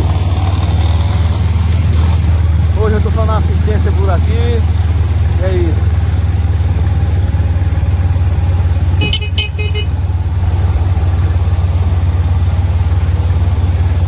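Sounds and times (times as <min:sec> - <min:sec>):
vehicle engine idling: 0:00.0 - 0:14.0
high-pitched horn beeps: 0:09.0 - 0:10.0.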